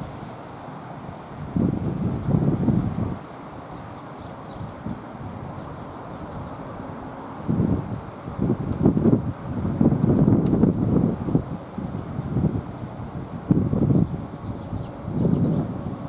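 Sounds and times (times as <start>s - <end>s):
insects chirping: 0.0s - 16.0s
wind buffeting microphone: 1.3s - 3.2s, 7.4s - 16.0s.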